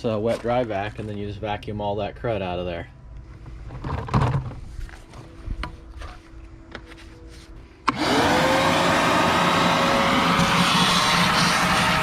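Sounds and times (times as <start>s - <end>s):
shop vac motor whining: 7.9s - 12.0s.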